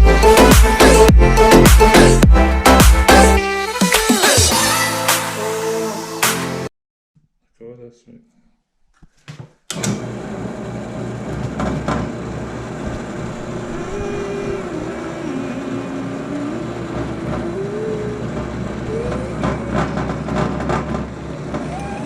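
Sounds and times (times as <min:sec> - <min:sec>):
electric saw cutting wood: 0:11.6 - 0:21.9.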